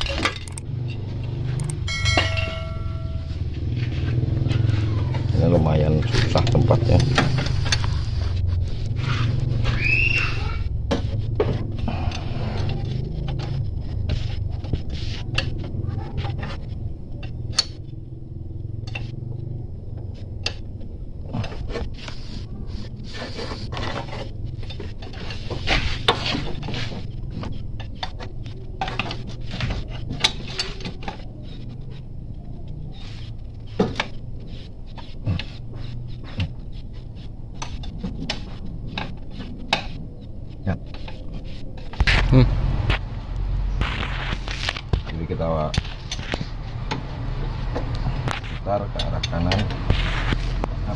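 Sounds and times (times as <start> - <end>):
spanner clicking on metal: 0.0 - 1.0, 1.6 - 2.8
steady low hum: 0.0 - 50.9
brief squeak: 9.6 - 10.6.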